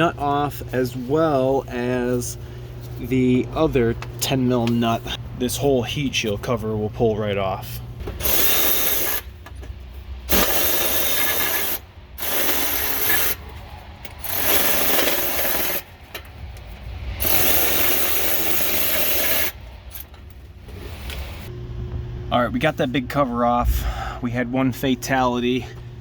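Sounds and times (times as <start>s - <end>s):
ratchet wrench clattering: 10.3s - 20.4s.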